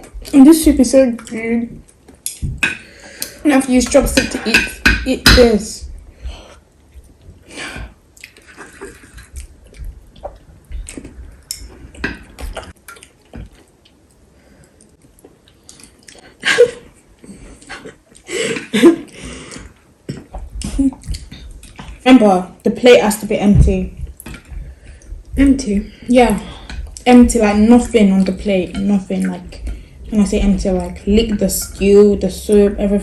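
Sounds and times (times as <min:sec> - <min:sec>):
wet soup sounds: 0:05.9 - 0:16.4, 0:23.3 - 0:33.0
chewing: 0:08.2 - 0:16.4.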